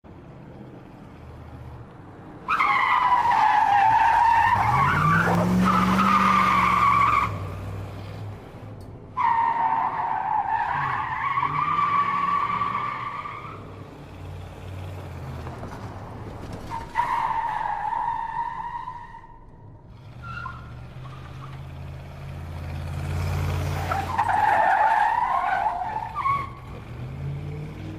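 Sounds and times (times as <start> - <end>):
car tyres squealing: 2.4 - 7.8, 9.2 - 13.8, 16.5 - 21.9, 22.7 - 27.9.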